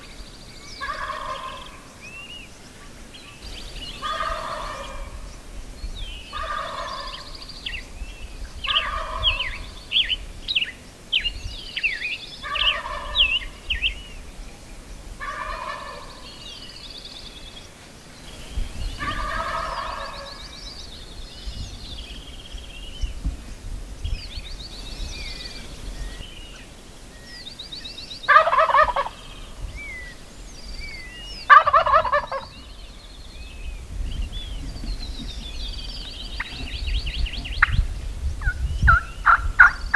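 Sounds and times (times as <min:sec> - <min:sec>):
songbirds chirping: 0:00.0 - 0:39.9
turkey gobbling: 0:00.8 - 0:01.7, 0:04.0 - 0:05.2, 0:06.3 - 0:07.2, 0:08.7 - 0:09.6, 0:12.4 - 0:13.5, 0:15.2 - 0:16.3, 0:19.0 - 0:20.4, 0:28.3 - 0:29.5, 0:31.5 - 0:32.7, 0:38.4 - 0:39.8.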